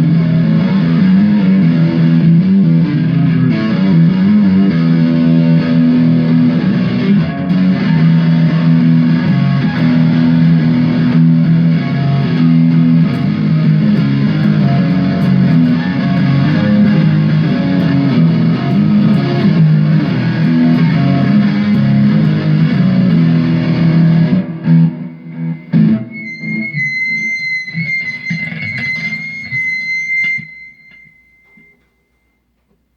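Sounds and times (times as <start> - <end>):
distorted electric guitar: 0.0 - 32.2
thin high whine: 24.5 - 32.9.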